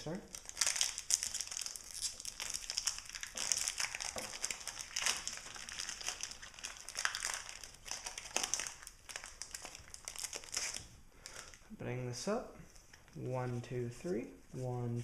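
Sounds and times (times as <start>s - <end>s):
foil wrapper crinkling: 0.3s - 11.6s.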